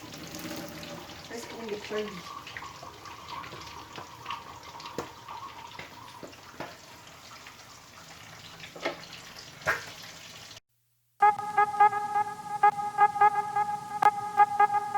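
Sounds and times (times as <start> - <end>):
water running from tap: 0.0 - 10.6.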